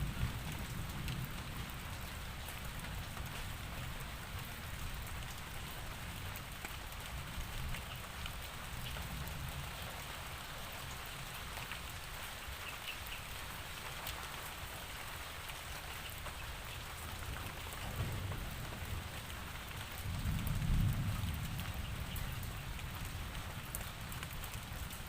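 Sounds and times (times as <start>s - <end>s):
low rumble of thunder: 0.0s - 11.7s, 16.9s - 25.0s
steady rain falling: 0.0s - 25.0s.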